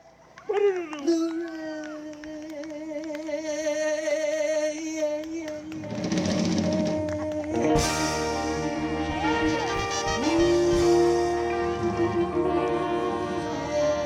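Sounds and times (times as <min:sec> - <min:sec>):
live soul band with horns: 0:03.8 - 0:14.0
drums: 0:05.2 - 0:14.0
cymbal crash: 0:07.8 - 0:12.1.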